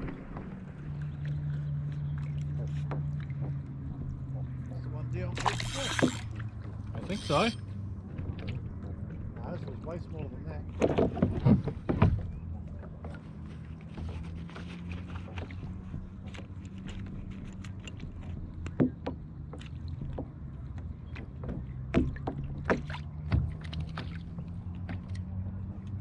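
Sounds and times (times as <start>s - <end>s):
kayak handling clicks and knocks: 5.3s - 6.4s, 7.0s - 7.6s, 10.8s - 12.2s, 13.0s - 24.2s.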